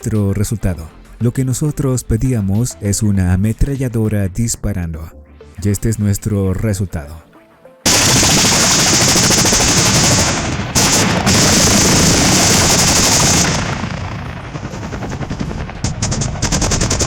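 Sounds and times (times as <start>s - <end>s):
rapid machine-gun fire: 7.9s - 17.0s.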